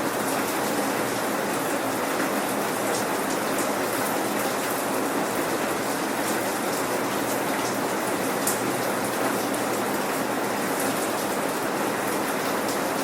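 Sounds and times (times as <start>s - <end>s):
steady rain pattering: 0.0s - 13.0s.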